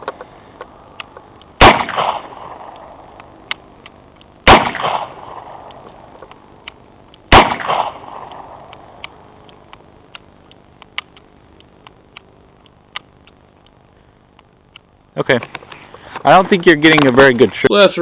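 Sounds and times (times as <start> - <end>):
faint scattered clicks: 0.0 - 17.4
handgun shot: 1.6 - 2.9, 4.5 - 5.8, 7.3 - 8.7.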